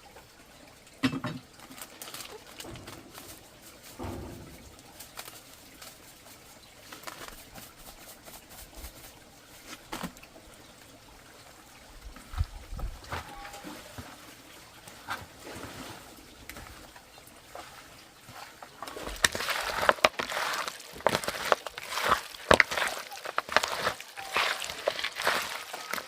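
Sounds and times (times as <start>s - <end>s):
water splashing and sloshing: 0.0s - 26.0s
sharp knocks: 2.6s - 5.5s.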